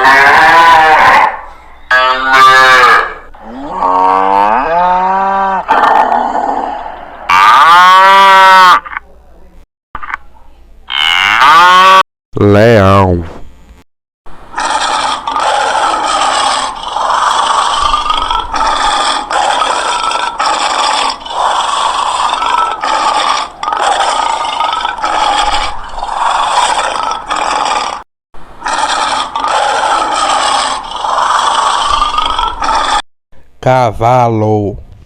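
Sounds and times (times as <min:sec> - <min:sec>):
lion growling and snarling: 0:03.4 - 0:08.0, 0:14.5 - 0:33.0.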